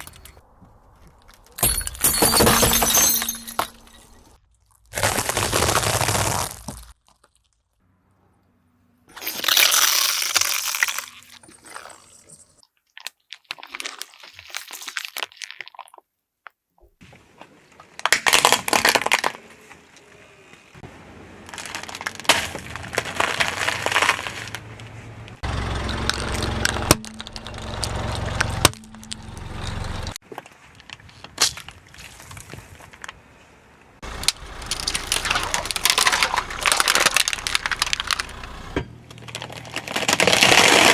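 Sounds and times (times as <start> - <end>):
car tyres crushing crunchy objects: 0.0 - 7.8, 9.1 - 12.2, 18.0 - 19.6, 21.4 - 30.1, 34.0 - 40.9.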